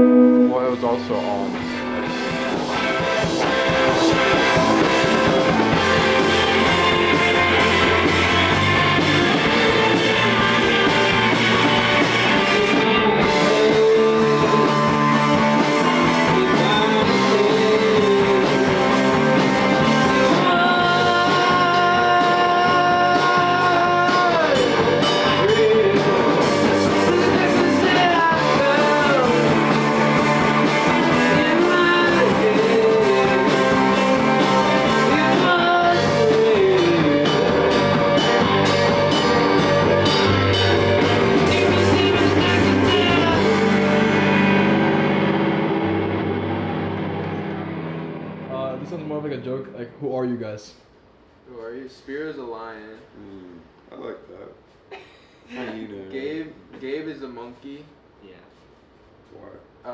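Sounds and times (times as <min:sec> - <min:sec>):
person singing: 0:00.0 - 0:45.2
electric guitar: 0:00.0 - 0:49.0
steady drum beat: 0:01.0 - 0:46.6.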